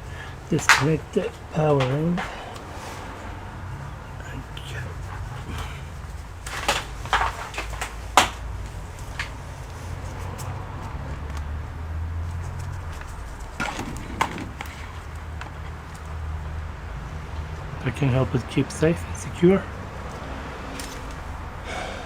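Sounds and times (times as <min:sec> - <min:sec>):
clicks and knocks of laptop parts: 0:06.4 - 0:08.5, 0:12.6 - 0:16.1.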